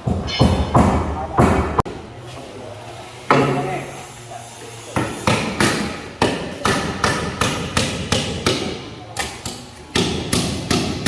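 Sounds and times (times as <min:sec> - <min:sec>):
hammer striking wood: 0:00.0 - 0:01.8, 0:05.0 - 0:08.8, 0:09.9 - 0:11.0.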